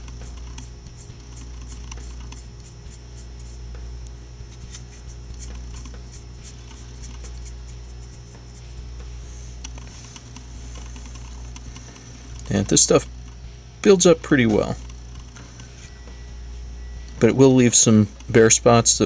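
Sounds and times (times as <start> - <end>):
paintbrush scratching on plastic: 0.0 - 13.1
steady low hum: 0.0 - 19.0.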